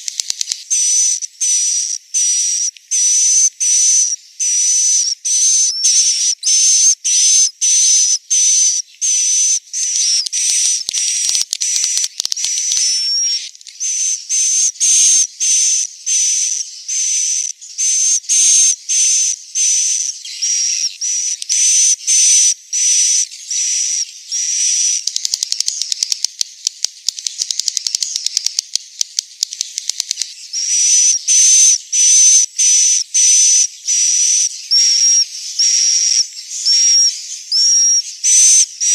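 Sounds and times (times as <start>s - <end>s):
clicking bird twitters: 0.0s - 1.3s, 9.8s - 13.8s, 24.7s - 31.0s
high hissy bird chirps: 0.0s - 26.4s, 29.4s - 38.9s.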